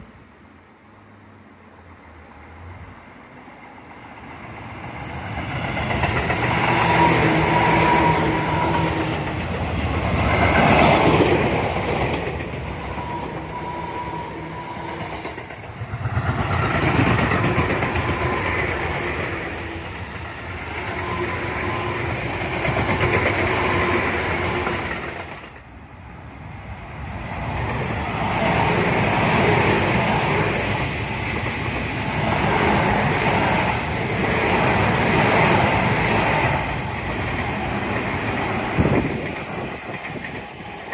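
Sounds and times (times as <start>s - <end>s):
wheel-on-rail rumble and clatter: 15.0s - 20.4s, 27.0s - 40.9s.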